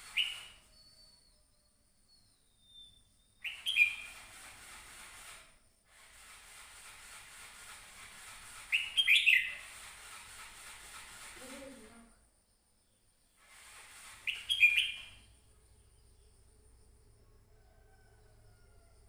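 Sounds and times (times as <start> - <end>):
bird chirpy song: 0.0 - 4.3, 8.7 - 9.7, 14.2 - 17.0.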